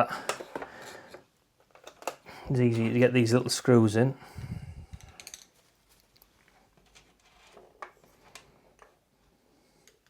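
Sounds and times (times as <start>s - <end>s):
small parts clicking and tapping: 0.2s - 2.2s, 5.0s - 9.0s.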